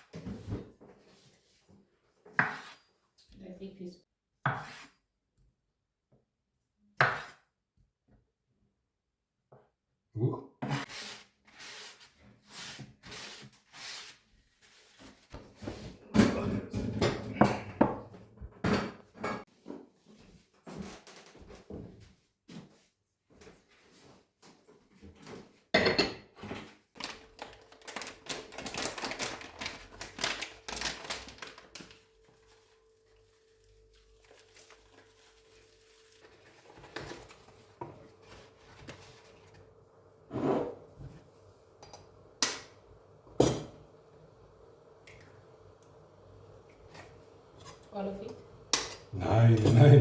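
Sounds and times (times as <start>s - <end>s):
dishes and pots clattering: 15.7s - 19.4s, 25.8s - 26.8s, 43.4s - 43.8s.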